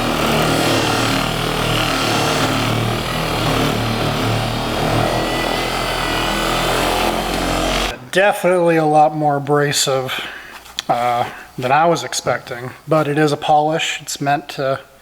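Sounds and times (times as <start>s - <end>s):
machine polisher running: 0.0s - 8.0s.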